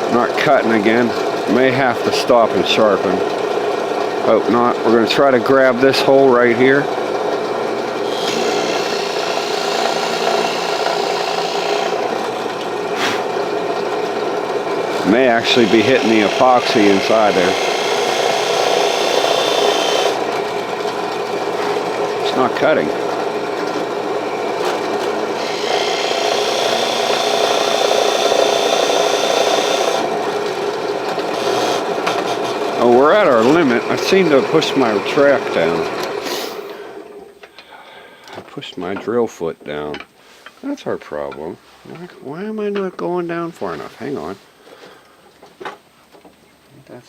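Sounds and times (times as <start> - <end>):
electric drill grinding in wood: 2.0 - 37.6.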